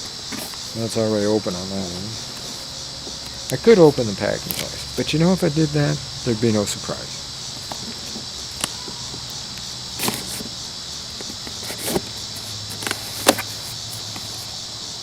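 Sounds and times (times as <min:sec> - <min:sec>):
crickets chirring: 0:00.0 - 0:15.0
cardboard box scraping and knocking: 0:10.0 - 0:10.5, 0:11.2 - 0:14.5.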